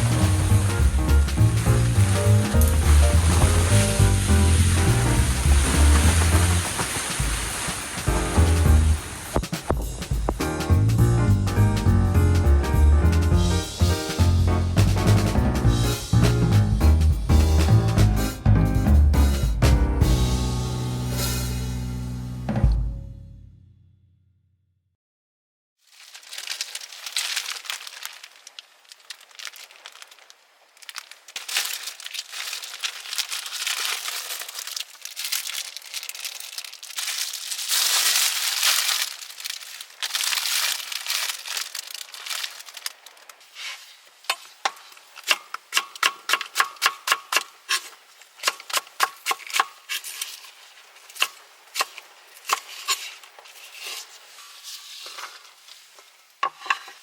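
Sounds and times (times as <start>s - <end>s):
packaging crinkling and tearing: 0.0s - 8.1s, 25.8s - 45.7s, 47.3s - 57.0s.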